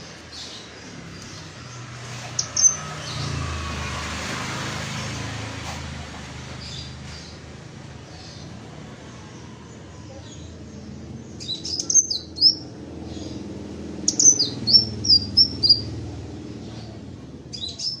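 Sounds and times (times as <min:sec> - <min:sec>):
bird chirping: 0:00.0 - 0:04.0, 0:10.0 - 0:18.0.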